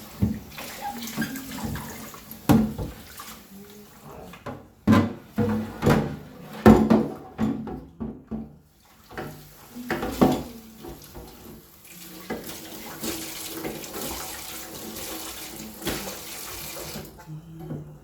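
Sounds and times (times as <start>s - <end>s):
tap water running into sink: 0.0s - 17.2s
knocks of things in sink: 1.2s - 3.1s, 4.4s - 11.5s.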